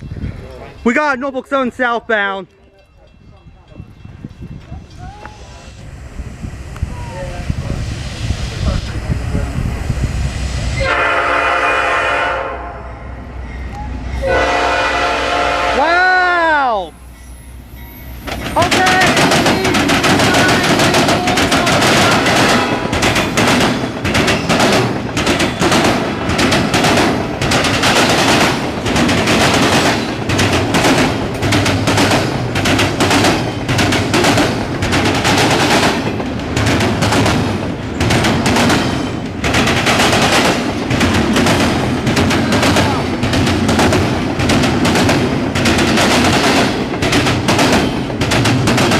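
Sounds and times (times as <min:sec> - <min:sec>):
low train rumble: 0:00.0 - 0:48.9
train wheels clattering on rails: 0:17.8 - 0:48.9.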